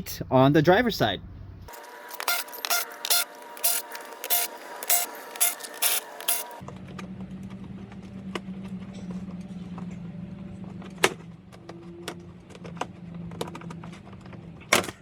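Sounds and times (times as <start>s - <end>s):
tools clicking: 1.7s - 6.6s.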